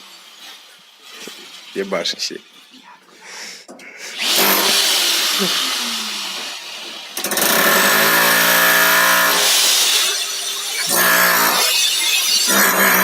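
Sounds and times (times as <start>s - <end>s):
power tool motor whine: 4.2s - 13.0s.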